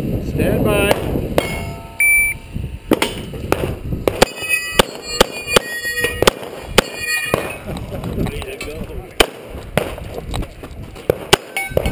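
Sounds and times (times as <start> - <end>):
ringing tones: 1.4 - 2.5, 4.2 - 7.6, 11.4 - 11.9
shot timer beep: 1.5 - 2.4
pistol shots: 2.9 - 7.6, 9.2 - 10.0, 11.1 - 11.9.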